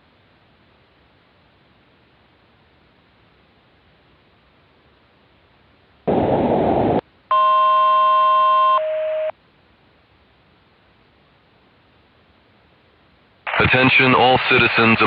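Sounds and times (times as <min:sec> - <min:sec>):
static burst: 0:06.0 - 0:07.4, 0:13.4 - 0:15.0.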